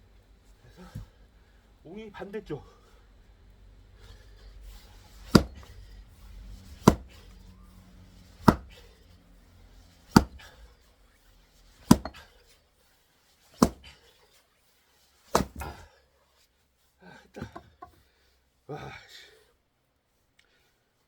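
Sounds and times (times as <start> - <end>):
axe striking log: 5.1 - 5.9, 6.6 - 7.4, 8.3 - 9.0, 10.1 - 10.6, 11.8 - 12.3, 13.6 - 14.0, 15.3 - 15.8.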